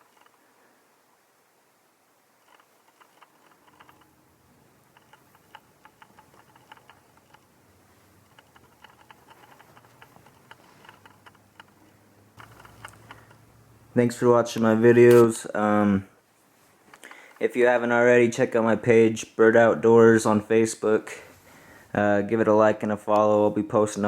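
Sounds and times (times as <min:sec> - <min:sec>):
soft low hum: 0:00.0 - 0:15.3
light clicks and taps: 0:02.4 - 0:04.2, 0:04.8 - 0:13.6.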